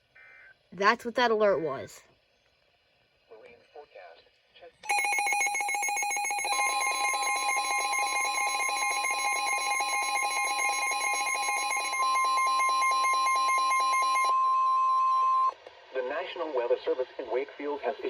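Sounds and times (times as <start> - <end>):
high-pitched alarm tone: 4.8 - 15.6.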